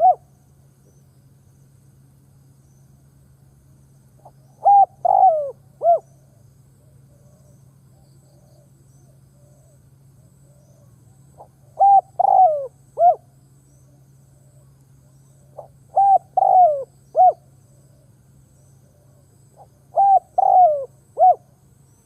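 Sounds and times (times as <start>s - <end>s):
dove cooing: 0.0s - 0.3s, 4.2s - 7.6s, 10.4s - 13.3s, 15.3s - 18.1s, 18.8s - 21.6s
faint low hum: 0.0s - 22.0s.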